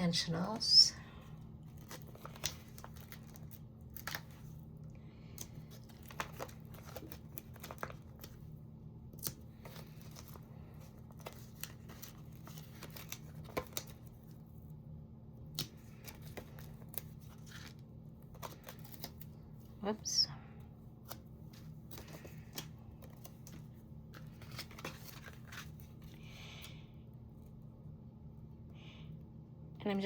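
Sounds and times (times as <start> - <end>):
steady low hum: 0.0 - 30.0
paper rustling and tapping: 5.3 - 8.4, 9.1 - 14.3.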